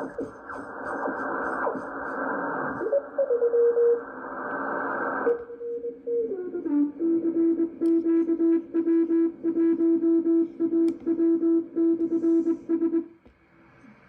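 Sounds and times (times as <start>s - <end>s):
radio band hiss: 0.0s - 6.1s, 12.0s - 13.0s
radio carrier tone: 0.0s - 13.2s.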